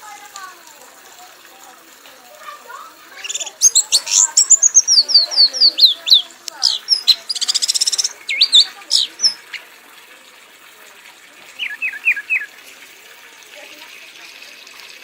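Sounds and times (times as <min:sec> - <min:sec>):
songbird singing: 0:03.1 - 0:09.7, 0:11.6 - 0:12.5.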